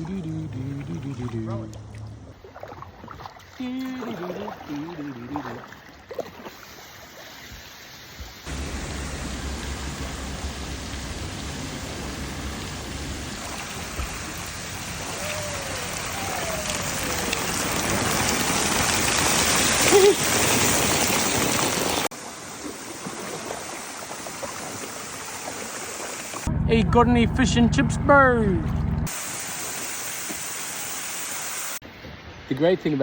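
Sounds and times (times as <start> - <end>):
falling splashing water: 8.5 - 31.8.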